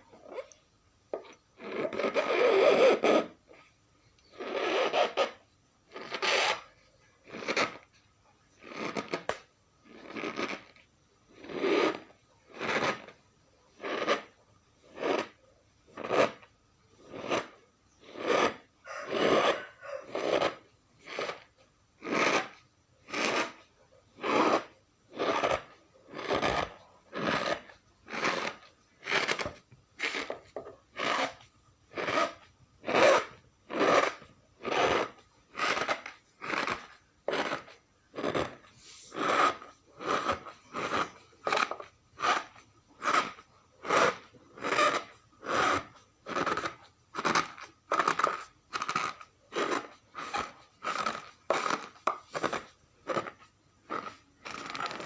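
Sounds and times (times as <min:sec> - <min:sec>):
cornstarch squeaky crunch: 0:08.6 - 0:13.2, 0:13.8 - 0:55.0.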